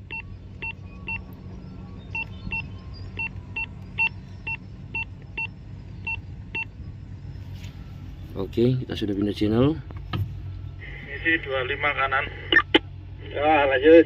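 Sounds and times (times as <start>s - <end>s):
two-tone keypad beeps: 0.0s - 6.8s
low hum: 0.0s - 14.0s.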